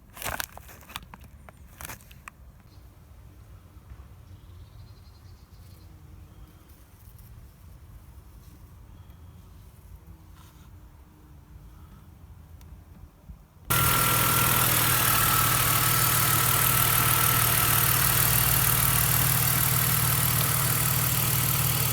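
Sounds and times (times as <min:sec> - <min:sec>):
car engine idling: 0:13.7 - 0:21.9.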